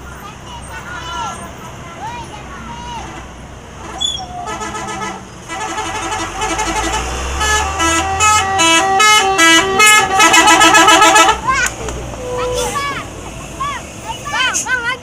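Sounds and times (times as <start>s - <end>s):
musical air horn tune: 3.8s - 11.4s.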